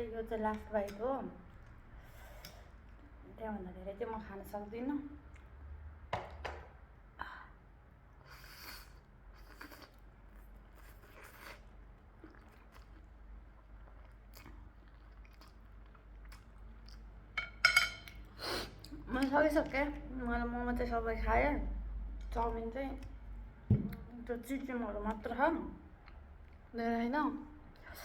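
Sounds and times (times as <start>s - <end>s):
person chewing food: 8.3s - 17.4s.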